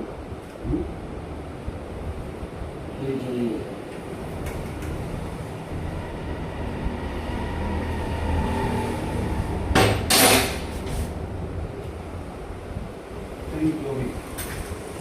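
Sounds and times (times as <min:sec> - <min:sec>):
engine low rumble: 0:00.0 - 0:15.0
sudden loud rushing noise: 0:04.0 - 0:13.0.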